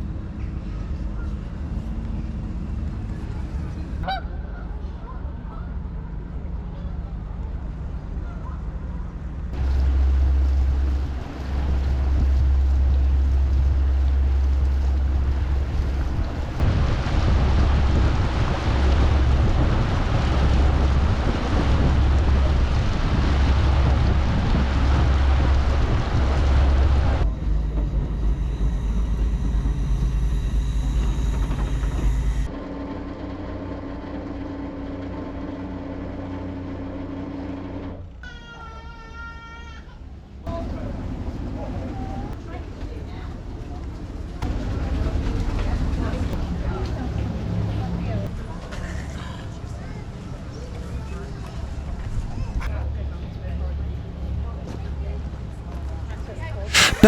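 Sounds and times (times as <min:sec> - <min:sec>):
boat engine hum: 0:00.0 - 0:36.8, 0:56.7 - 0:57.0
wind buffeting microphone: 0:09.6 - 0:27.3.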